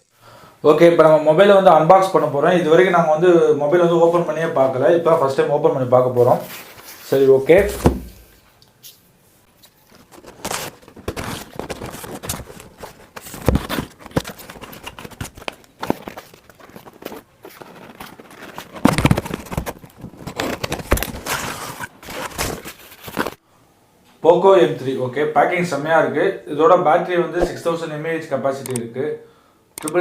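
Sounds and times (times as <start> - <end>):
sharp knocks: 7.5 - 8.4
packaging rustling and tearing: 9.6 - 23.4.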